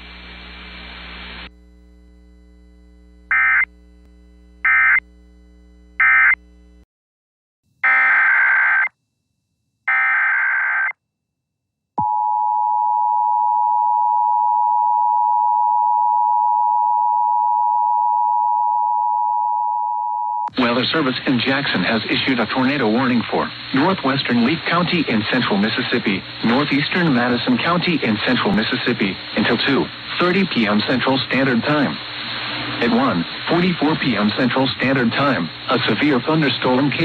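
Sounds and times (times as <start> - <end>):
faint hum and hiss: 0.0 - 6.8, 20.6 - 37.0.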